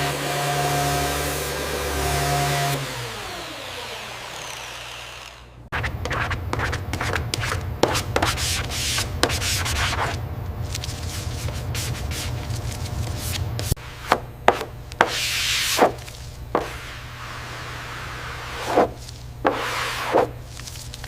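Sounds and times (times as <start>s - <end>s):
steady low hum: 5.4s - 21.0s
rubbing and scraping strokes: 5.7s - 21.0s.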